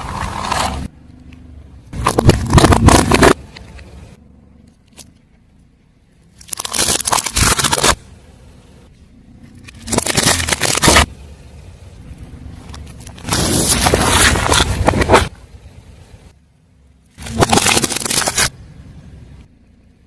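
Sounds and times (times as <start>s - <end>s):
tyre crushing crunchy objects: 0.0s - 0.9s, 1.9s - 3.5s, 6.4s - 8.0s, 9.7s - 11.2s, 12.6s - 15.4s, 17.1s - 18.5s
low car engine rumble: 0.0s - 20.0s.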